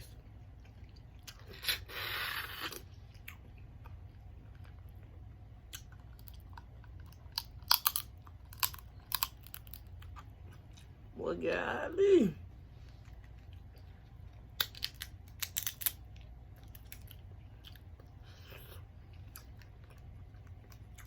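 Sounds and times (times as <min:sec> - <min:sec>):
biting and chewing crunches: 0:05.7 - 0:10.9, 0:12.9 - 0:21.0.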